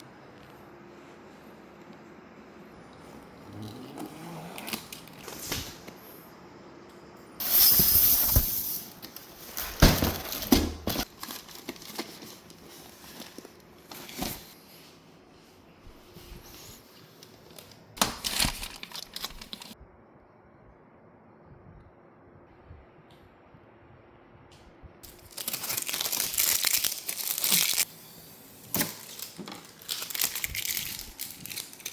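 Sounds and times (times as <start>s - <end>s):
packaging crinkling: 9.0s - 14.6s, 17.2s - 19.8s, 25.0s - 27.9s, 28.7s - 31.9s
packaging tearing: 10.2s - 14.4s, 18.0s - 19.8s, 25.0s - 27.9s, 28.7s - 31.9s.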